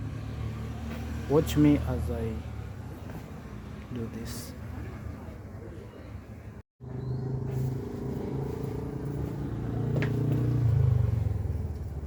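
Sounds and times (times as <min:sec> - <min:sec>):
vehicle engine humming: 0:06.8 - 0:12.0.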